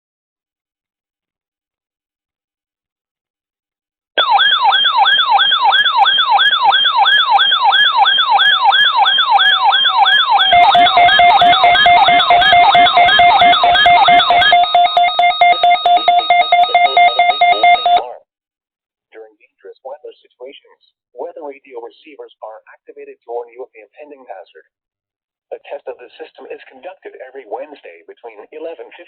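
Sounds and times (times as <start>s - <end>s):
steady alarm tone: 4.2s - 18.1s
electronic siren whooping: 4.2s - 18.2s
rapid pulsing beeps: 8.1s - 18.1s.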